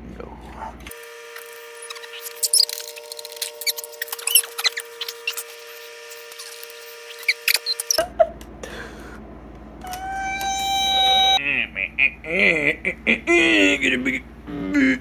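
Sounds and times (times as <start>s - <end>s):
steady low hum: 0.0s - 15.0s
high-pitched squeaks and chirps: 1.7s - 8.0s, 9.9s - 11.4s.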